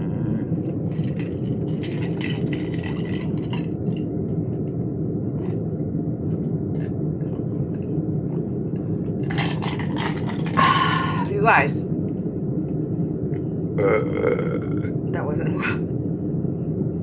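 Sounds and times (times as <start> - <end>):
low rumble: 0.0 - 17.0
chewing and mouth clicks: 6.7 - 7.8.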